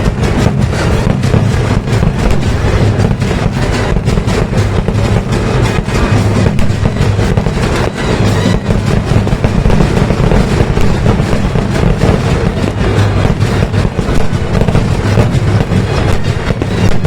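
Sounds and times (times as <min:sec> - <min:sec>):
firecrackers going off: 0:00.0 - 0:17.0.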